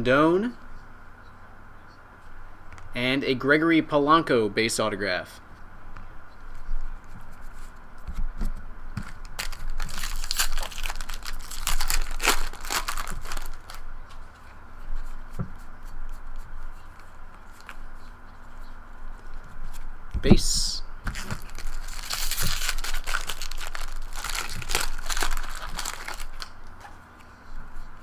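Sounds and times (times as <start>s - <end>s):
foil wrapper tearing and crinkling: 9.2s - 13.8s, 21.2s - 26.6s
cards shuffling and clicking: 21.1s - 27.3s.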